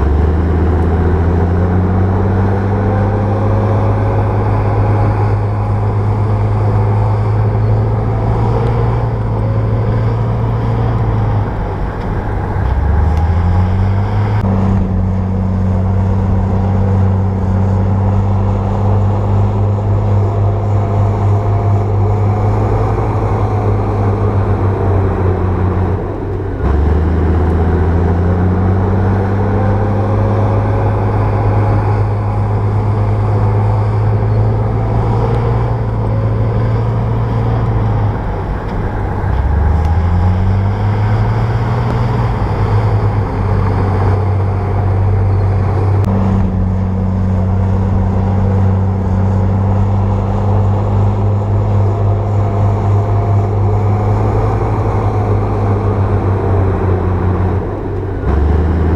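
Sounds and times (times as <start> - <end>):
bulldozer diesel engine running: 0.0 - 58.9.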